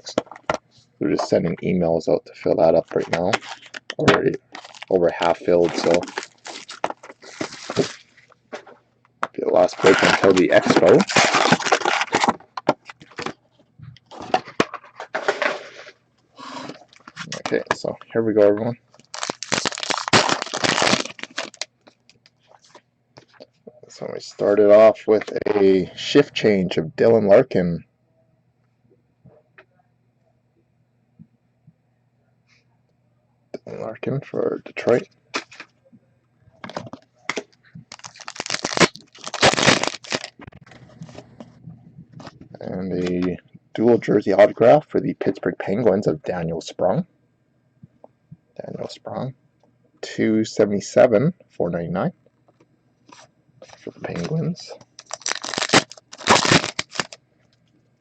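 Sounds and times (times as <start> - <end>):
wrapper crinkling and tearing: 2.9 - 8.1, 9.5 - 13.3, 18.9 - 22.2, 37.3 - 41.2, 54.9 - 57.2.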